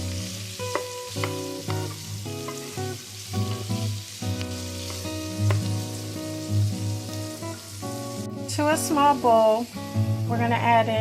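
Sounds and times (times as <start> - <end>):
food sizzling in a pan: 0.0 - 11.0
utensil clicking against pan: 0.7 - 2.7.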